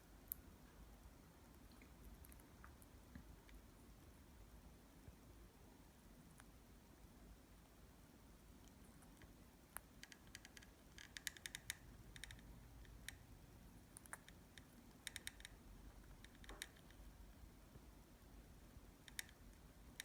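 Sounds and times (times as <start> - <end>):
bird beak nibbling clicks: 8.6 - 13.2, 13.9 - 17.0, 19.0 - 20.0.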